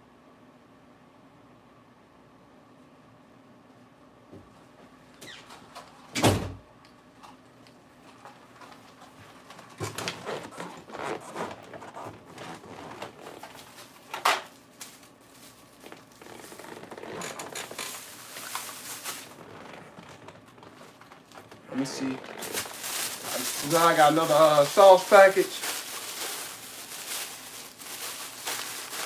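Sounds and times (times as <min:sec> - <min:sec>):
rustling: 0:10.2 - 0:29.0.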